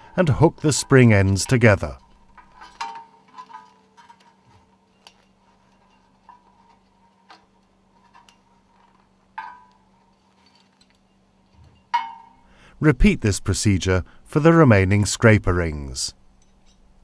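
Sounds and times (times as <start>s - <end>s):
faint steady hum: 0.0s - 17.0s
metal parts clinking: 0.2s - 12.4s.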